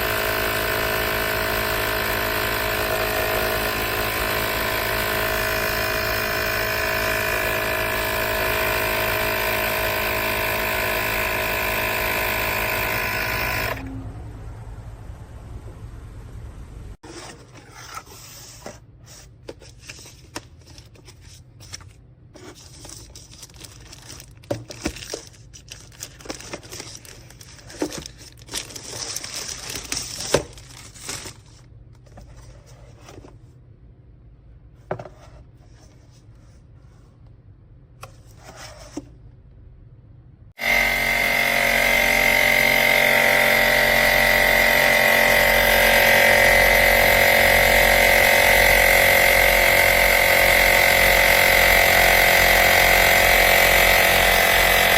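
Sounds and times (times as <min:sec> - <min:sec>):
air compressor whining: 0:00.0 - 0:14.0, 0:40.6 - 0:54.9
handling clicks and rustling: 0:19.5 - 0:32.4.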